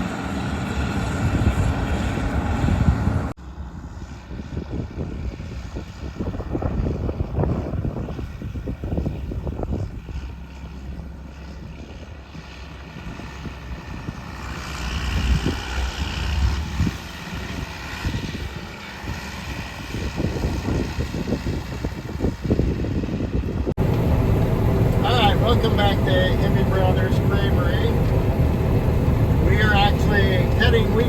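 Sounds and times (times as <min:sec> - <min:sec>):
combine harvester engine rumble: 0:06.7 - 0:19.6, 0:23.1 - 0:31.0.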